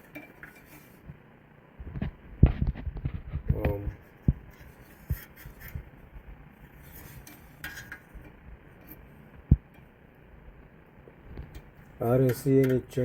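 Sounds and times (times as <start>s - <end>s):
scrape and clink: 0.0s - 1.0s, 6.7s - 9.0s.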